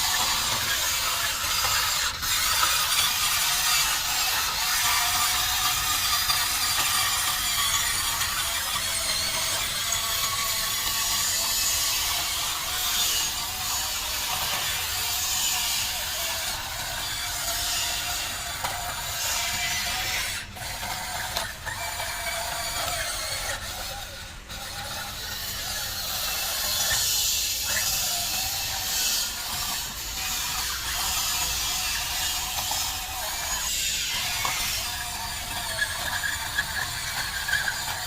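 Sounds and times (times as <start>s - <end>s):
small electric motors whirring: 0.0s - 38.0s.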